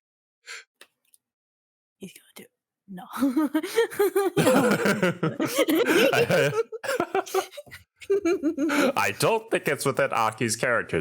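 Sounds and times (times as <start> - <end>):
people laughing: 3.2 - 9.4.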